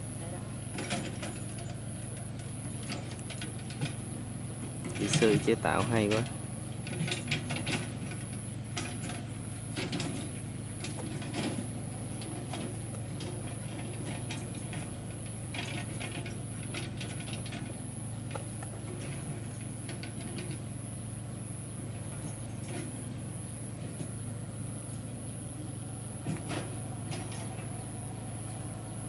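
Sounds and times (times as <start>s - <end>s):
tractor engine running under load: 0.0s - 29.0s
machine clicks and rattles: 0.7s - 4.1s, 4.8s - 20.7s.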